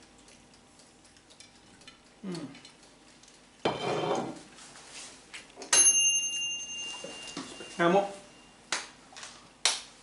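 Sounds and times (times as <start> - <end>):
timer bell ringing: 5.7 - 8.6.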